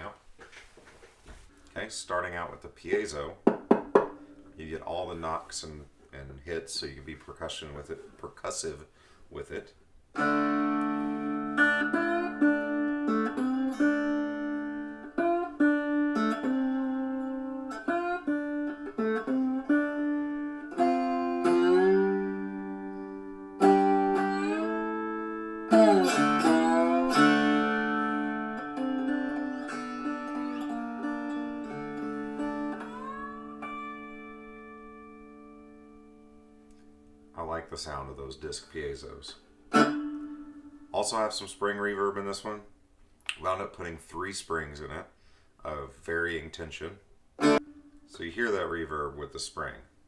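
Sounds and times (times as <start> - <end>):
percussive knocks on guitar box: 3.5 - 4.2
cigar box guitar picked notes: 10.2 - 37.4, 38.8 - 41.0, 47.4 - 48.7.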